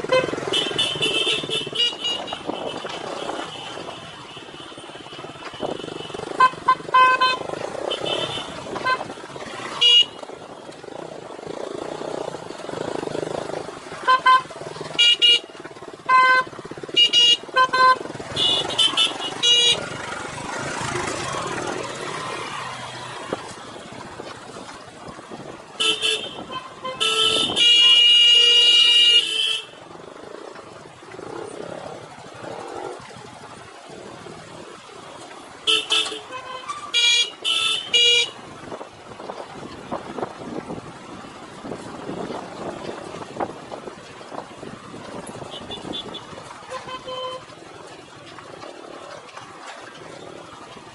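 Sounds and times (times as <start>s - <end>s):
vehicle horns honking: 0.0s - 10.3s, 13.9s - 20.1s, 25.8s - 29.9s, 35.6s - 38.4s, 45.2s - 47.6s
motorcycle engine running: 0.0s - 50.9s
rumble of riding and wind: 0.0s - 50.9s.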